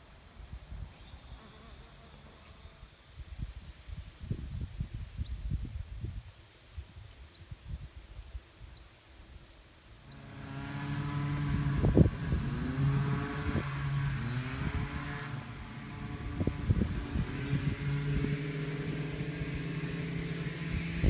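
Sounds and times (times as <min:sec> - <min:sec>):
engine humming: 0:09.7 - 0:21.0.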